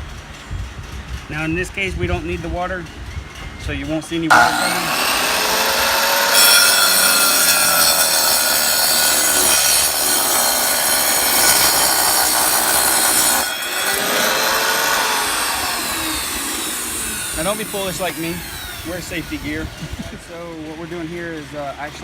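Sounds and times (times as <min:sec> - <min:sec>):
tile saw grinding stone: 0:04.3 - 0:20.1.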